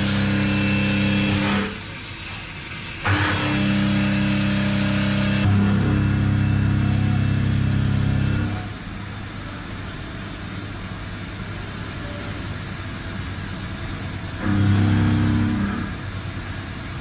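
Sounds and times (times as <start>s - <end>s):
machine humming: 0.0s - 1.8s, 3.0s - 9.0s, 13.8s - 17.0s.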